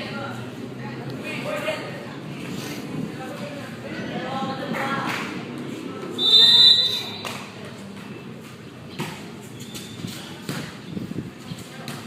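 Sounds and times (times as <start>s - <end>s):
murmur of voices in a hall: 0.0s - 8.9s
referee's whistle blast: 6.2s - 7.2s
ball and feet thuds: 9.0s - 10.9s.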